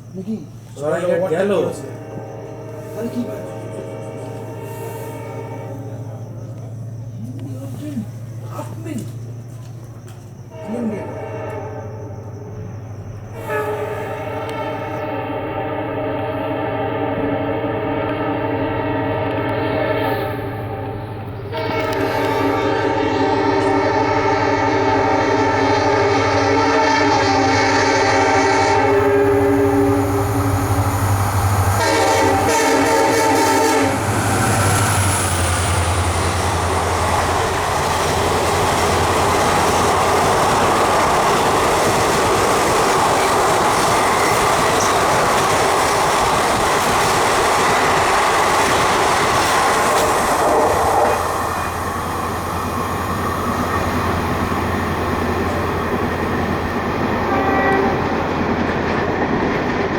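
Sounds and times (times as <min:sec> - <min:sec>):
locomotive horn: 0:01.0 - 0:06.7, 0:10.5 - 0:12.7, 0:13.3 - 0:45.4, 0:47.6 - 0:58.4
train wheels clattering on rails: 0:05.8 - 0:15.0, 0:28.8 - 0:59.9.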